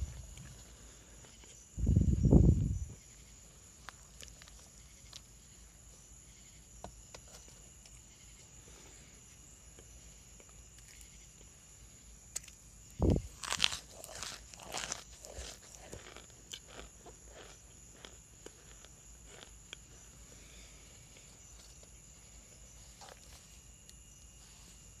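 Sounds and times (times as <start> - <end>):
chewing cornstarch chunks crunching: 3.8 - 5.3, 12.3 - 20.0.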